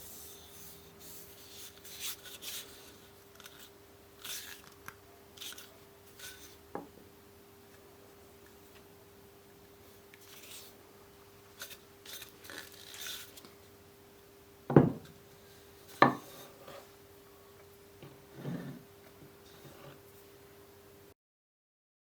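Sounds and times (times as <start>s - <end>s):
hammer knocks: 14.7s - 15.1s
light scraping and rubbing: 15.9s - 16.9s, 18.3s - 20.1s.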